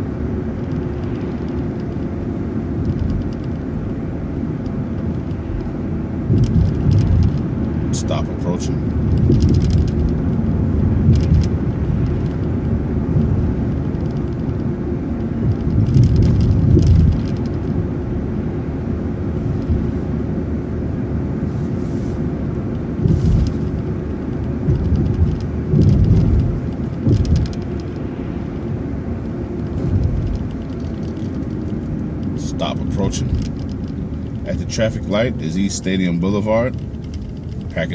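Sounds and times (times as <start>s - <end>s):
bus engine drone: 0.0s - 37.9s
road rumble: 0.0s - 37.9s
rattles and clicks: 2.7s - 4.0s, 4.6s - 18.0s, 22.6s - 37.9s.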